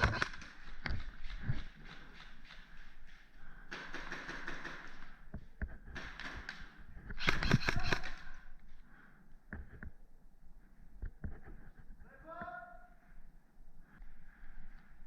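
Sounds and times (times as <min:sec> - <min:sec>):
airsoft guns firing: 0:03.7 - 0:05.2, 0:05.9 - 0:08.4.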